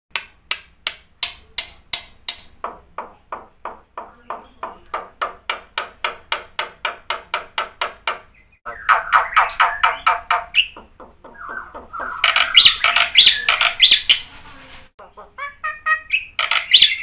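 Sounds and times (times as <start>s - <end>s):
starling singing: 3.0s - 17.0s.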